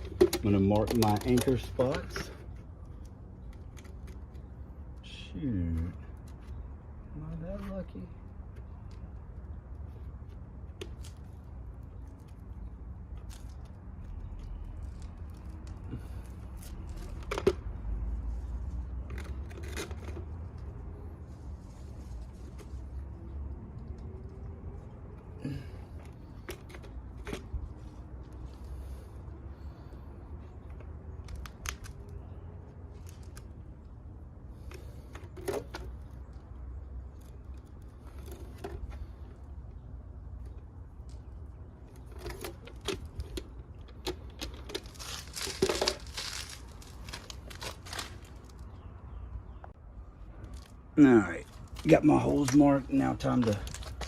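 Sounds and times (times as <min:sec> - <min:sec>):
handling rustle: 0:40.6 - 0:48.9.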